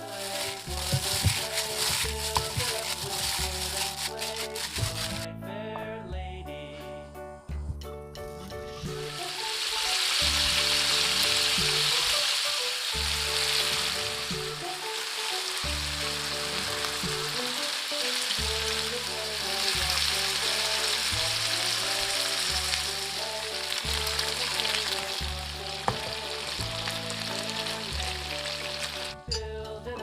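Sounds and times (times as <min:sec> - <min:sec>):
meat sizzling in a frying pan: 0:00.0 - 0:05.2, 0:08.8 - 0:29.2
background music with bass line: 0:00.0 - 0:09.4, 0:10.2 - 0:12.2, 0:13.0 - 0:14.8, 0:15.6 - 0:17.5, 0:18.4 - 0:30.0.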